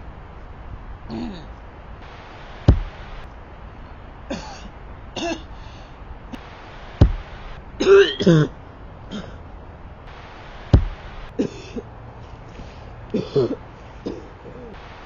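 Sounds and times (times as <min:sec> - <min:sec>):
sharp thumps: 0:02.0 - 0:03.2, 0:06.4 - 0:07.6, 0:10.1 - 0:11.3
person coughing: 0:11.4 - 0:11.8, 0:13.2 - 0:14.8.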